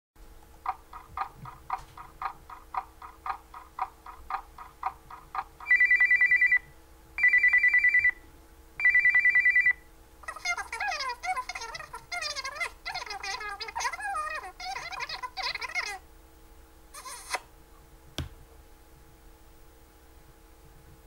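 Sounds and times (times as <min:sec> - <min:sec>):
trilling telephone ring: 0:05.7 - 0:06.6, 0:07.2 - 0:08.2, 0:08.8 - 0:09.8.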